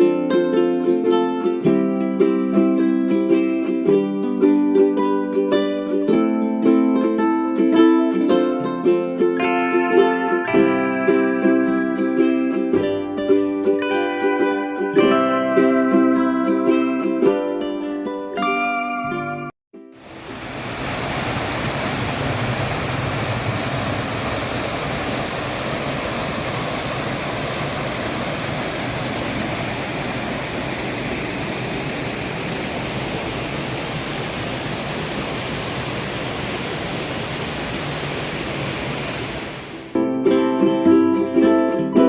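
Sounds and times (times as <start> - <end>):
stream water rushing: 20.0 - 39.9.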